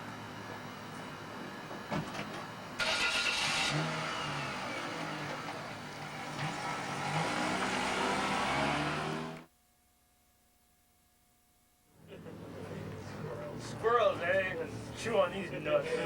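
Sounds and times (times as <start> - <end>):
car engine starting and revving: 2.8 - 9.5.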